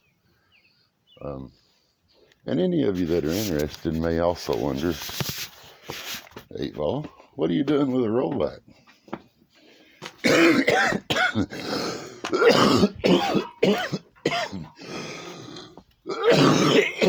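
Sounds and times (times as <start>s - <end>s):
man clearing throat: 10.2s - 17.0s
man coughing harshly: 10.2s - 17.0s.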